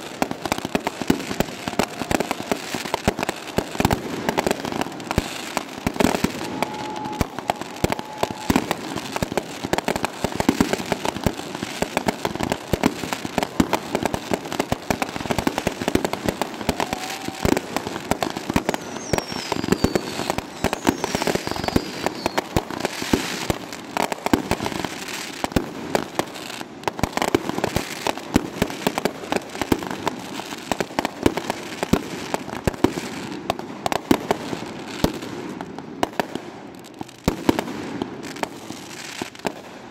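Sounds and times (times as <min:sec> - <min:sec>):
fireworks bangs and crackling: 0:00.0 - 0:39.9
faint falling whistles: 0:06.4 - 0:08.6, 0:18.7 - 0:22.4.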